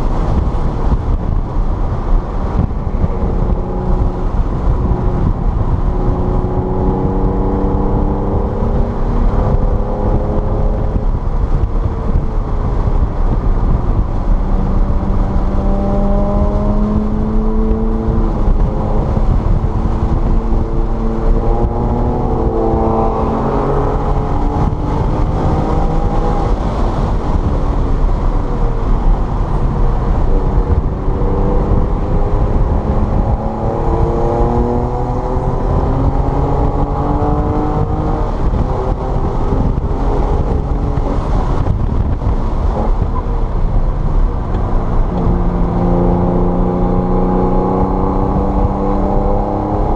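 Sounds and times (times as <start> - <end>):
car engine accelerating: 0.0 - 49.9
tyre and wind noise: 0.0 - 49.9.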